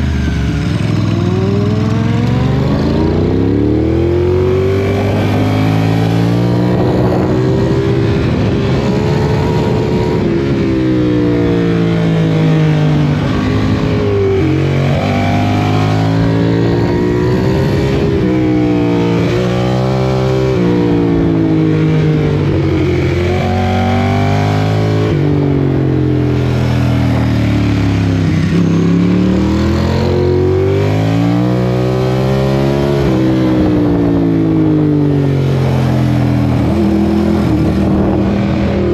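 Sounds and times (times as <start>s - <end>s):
vehicle engine revving: 0.0s - 38.9s.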